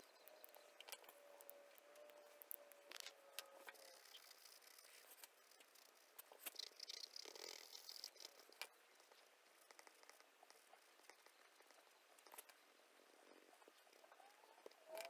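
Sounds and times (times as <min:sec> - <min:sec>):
small clicks: 0:00.0 - 0:08.8, 0:13.6 - 0:15.0
soft scratchy rustle: 0:00.0 - 0:15.0.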